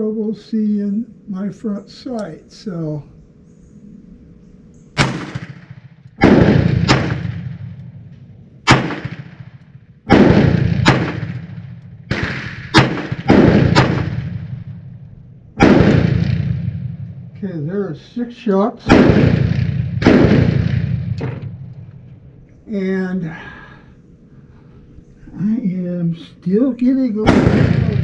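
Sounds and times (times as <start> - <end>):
revolver shots echoing: 5.0 - 8.1, 8.7 - 15.0, 15.6 - 17.3, 18.9 - 21.8, 27.3 - 28.0.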